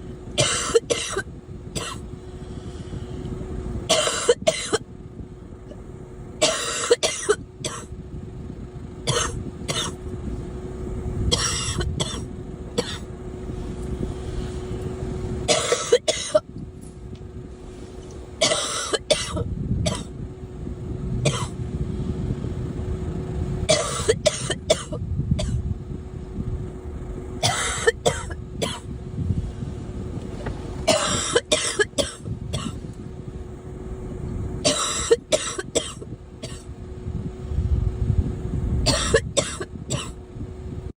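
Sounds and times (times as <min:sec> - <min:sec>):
steady low rumble: 0:00.0 - 0:40.9
girl coughing: 0:00.4 - 0:02.0, 0:03.9 - 0:04.8, 0:06.4 - 0:07.9, 0:09.1 - 0:10.0, 0:11.3 - 0:13.0, 0:15.5 - 0:16.4, 0:18.4 - 0:20.1, 0:21.2 - 0:21.6, 0:23.7 - 0:25.6, 0:27.4 - 0:28.9, 0:30.9 - 0:32.8, 0:34.6 - 0:36.6, 0:38.9 - 0:40.2.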